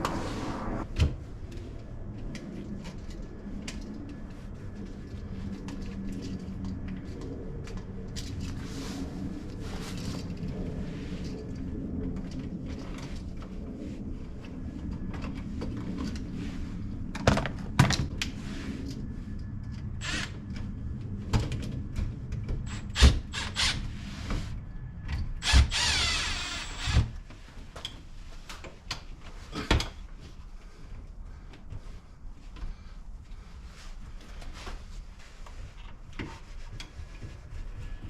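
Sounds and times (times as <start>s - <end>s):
power drill-driver whirring: 20.0s - 20.4s, 22.7s - 23.9s, 25.4s - 27.1s.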